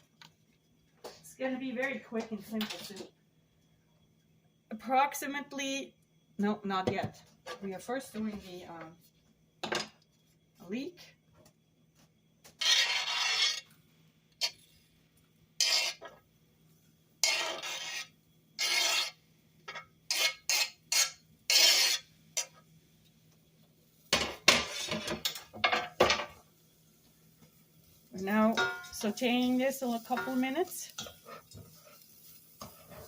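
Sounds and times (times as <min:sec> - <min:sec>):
utensil scraping a plate: 0:12.6 - 0:13.7, 0:15.6 - 0:16.1, 0:17.2 - 0:19.2, 0:20.1 - 0:22.6.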